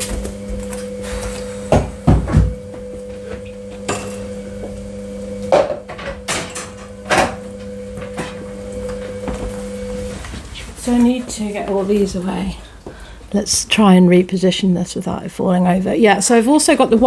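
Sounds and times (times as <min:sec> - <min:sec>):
steady low hum: 0:00.0 - 0:17.0
objects knocking and clunking: 0:01.7 - 0:04.2.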